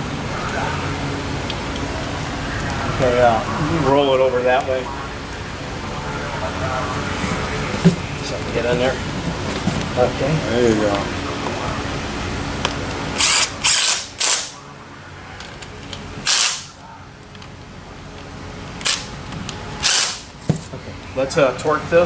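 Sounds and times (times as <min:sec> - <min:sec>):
power tool running bolts down: 0:13.1 - 0:14.6, 0:16.2 - 0:16.8, 0:19.8 - 0:20.3.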